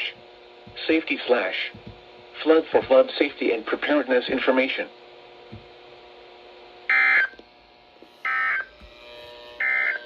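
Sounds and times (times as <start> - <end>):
digital data tone bursts: 6.9 - 7.4, 8.2 - 8.7, 9.6 - 10.0.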